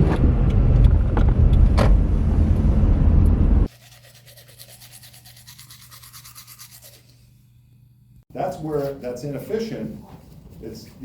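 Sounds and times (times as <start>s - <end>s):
loud low rumble: 0.0s - 3.7s
fast even scratching: 3.7s - 7.1s
steady low hum: 6.0s - 10.8s.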